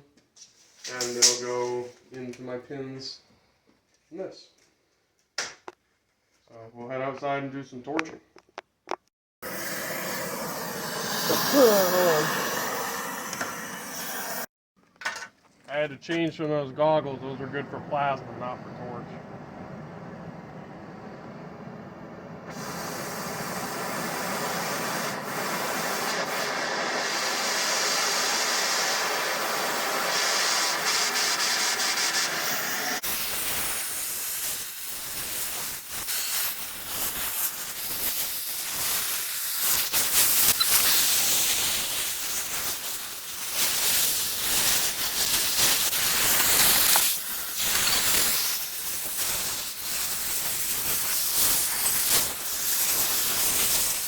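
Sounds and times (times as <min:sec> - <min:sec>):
cutting torch hissing: 0:09.4 - 0:14.5, 0:22.5 - 0:54.0.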